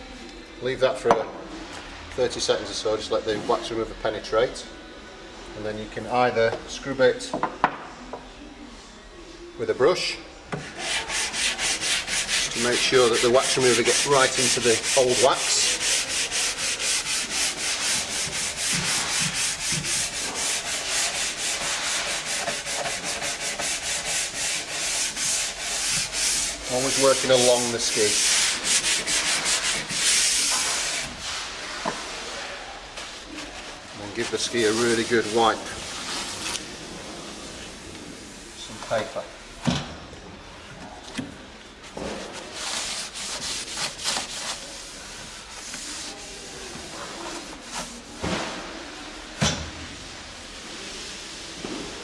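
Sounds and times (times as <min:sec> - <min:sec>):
brush scrubbing ski base: 0:10.6 - 0:36.7, 0:42.0 - 0:48.2.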